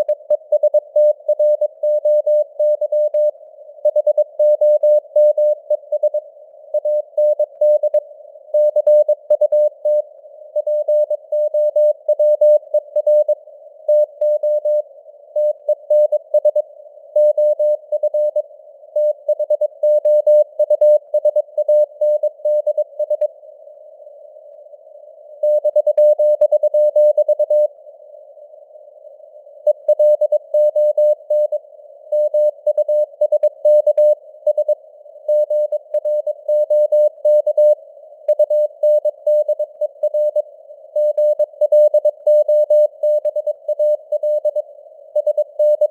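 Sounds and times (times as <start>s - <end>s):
faint radio noise hiss: 5.0s - 45.9s.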